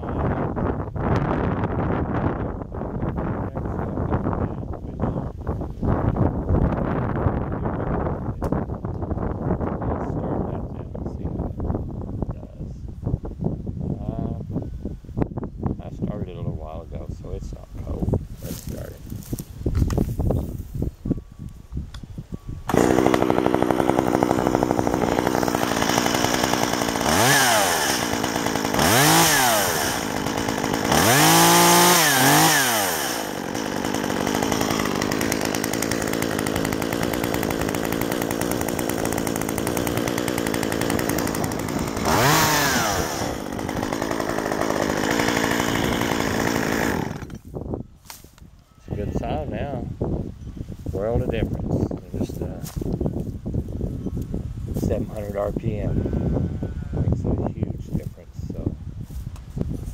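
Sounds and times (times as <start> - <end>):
chainsaw running and revving: 22.7 - 47.5, 51.2 - 53.3
chainsaw starting: 22.7 - 47.5.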